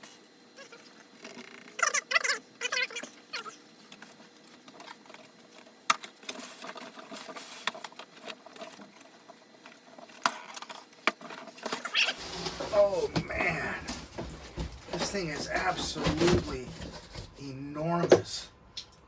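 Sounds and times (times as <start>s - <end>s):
packaging rustling: 4.0s - 17.4s.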